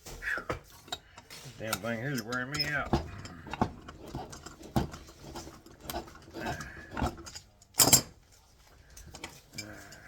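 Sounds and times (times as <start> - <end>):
clicks and knocks of hand tools: 0.4 - 10.0.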